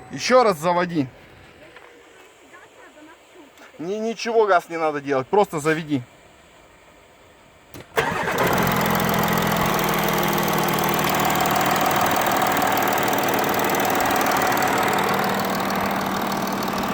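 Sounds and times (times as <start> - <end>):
engine cranking and idling: 7.7 - 16.9.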